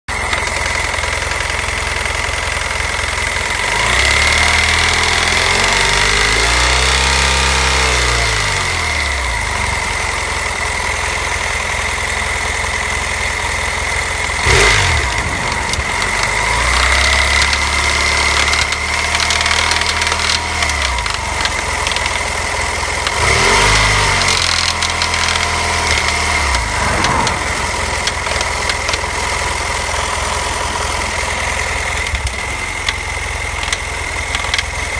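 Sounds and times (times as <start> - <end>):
motorcycle engine revving: 0.1 - 34.9
steady high whine: 14.3 - 19.2, 24.1 - 33.0.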